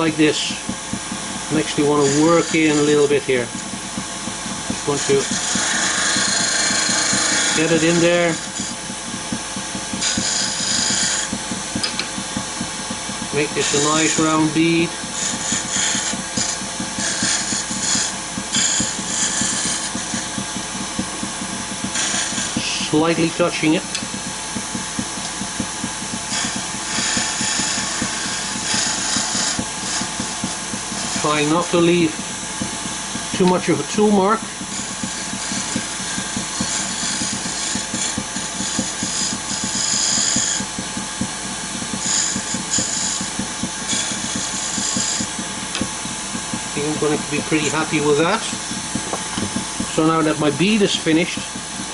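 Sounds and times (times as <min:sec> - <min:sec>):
gouge cutting wood hissing: 0:00.0 - 0:51.9
turning tool scraping wood: 0:00.0 - 0:51.9
wood lathe running: 0:00.0 - 0:51.9.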